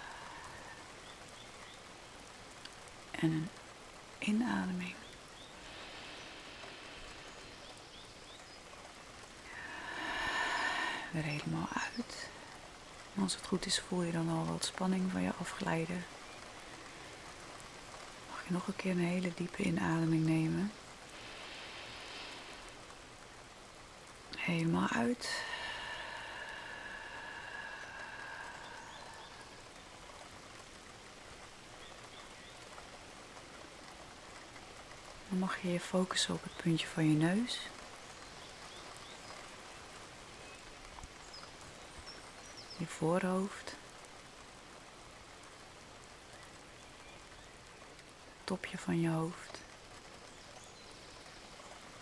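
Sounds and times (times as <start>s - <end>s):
steady rain: 0.0s - 52.0s
faint bird chirps: 4.5s - 12.5s, 24.9s - 30.2s.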